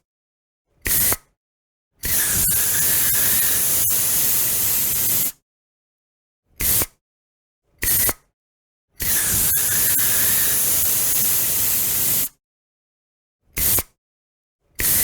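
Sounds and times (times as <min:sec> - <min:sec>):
aerosol spray can hissing: 0:02.1 - 0:05.4, 0:06.6 - 0:06.9, 0:09.0 - 0:12.4, 0:13.6 - 0:13.9, 0:14.8 - 0:15.0.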